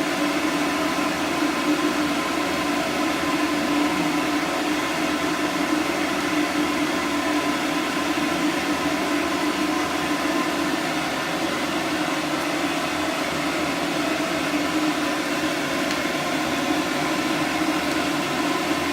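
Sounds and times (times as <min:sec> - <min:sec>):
grooming dryer blowing air: 0:00.0 - 0:18.9.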